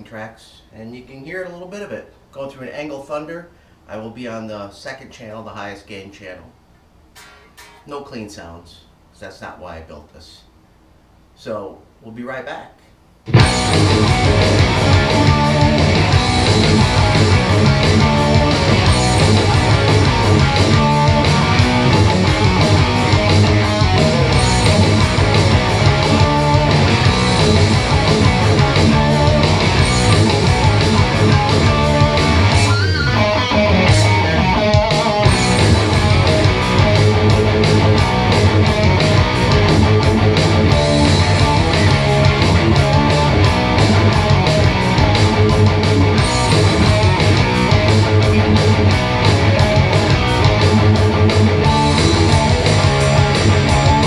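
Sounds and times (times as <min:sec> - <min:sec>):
distorted electric guitar: 0:07.2 - 0:07.9, 0:13.3 - 0:54.0
drums and bass backing track: 0:13.3 - 0:54.0.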